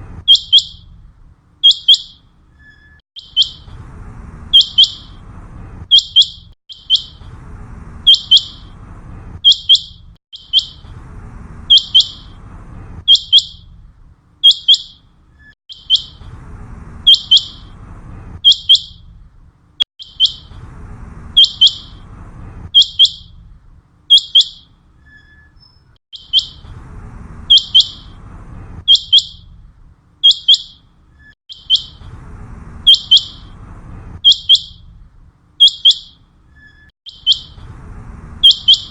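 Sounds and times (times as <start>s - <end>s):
low rumble: 0.0s - 1.6s, 3.6s - 14.4s, 16.1s - 19.8s, 20.4s - 24.0s
quail calling: 11.7s - 12.3s, 17.1s - 17.7s, 27.5s - 28.1s, 32.9s - 33.5s, 37.1s - 37.6s, 38.4s - 38.9s.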